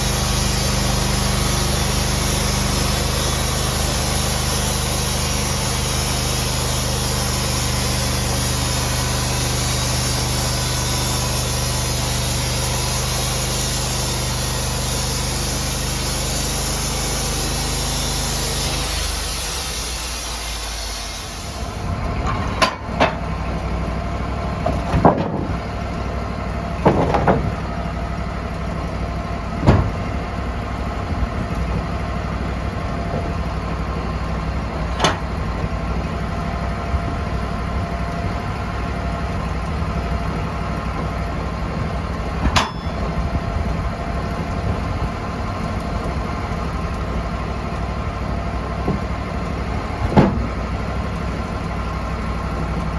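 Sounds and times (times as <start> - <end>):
sawmill engine running: 0.0 - 52.9
hiss: 8.1 - 21.8
sharp knocks and clanks: 22.2 - 23.3, 24.6 - 25.6, 26.8 - 27.6, 29.6 - 30.2, 34.9 - 35.7, 42.4 - 43.2, 49.9 - 50.6.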